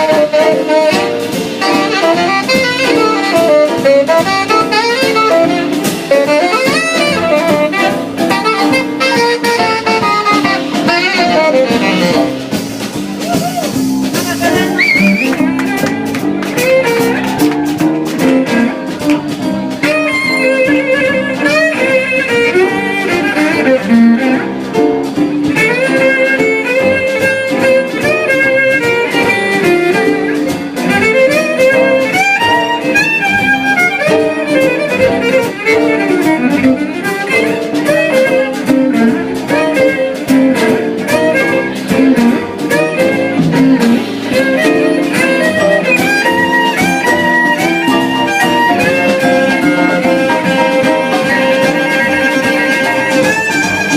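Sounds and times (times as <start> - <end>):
guitar accompaniment: 0.0 - 53.9
fiddle playing quick runs: 13.0 - 24.9, 25.5 - 53.9.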